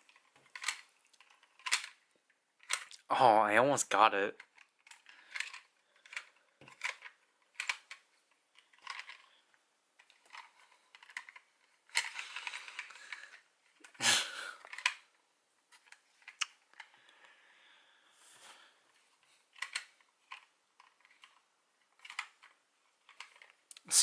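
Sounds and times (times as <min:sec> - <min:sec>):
plastic toy rattling: 0:00.0 - 0:03.0, 0:04.3 - 0:14.0, 0:14.6 - 0:17.0, 0:19.2 - 0:23.6
plastic toy clicking: 0:00.1 - 0:02.0, 0:02.6 - 0:03.0, 0:04.4 - 0:09.3, 0:10.0 - 0:14.0, 0:14.6 - 0:15.1, 0:19.6 - 0:21.4, 0:22.0 - 0:23.6.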